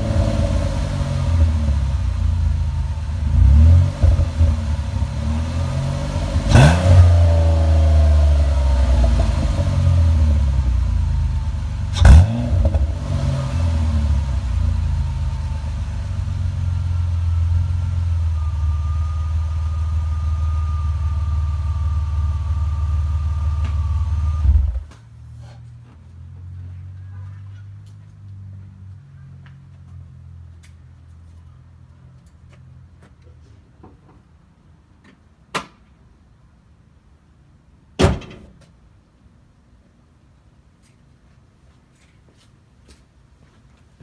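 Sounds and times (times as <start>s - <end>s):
car engine idling: 0.0s - 24.9s
engine throttle blips: 0.0s - 25.0s.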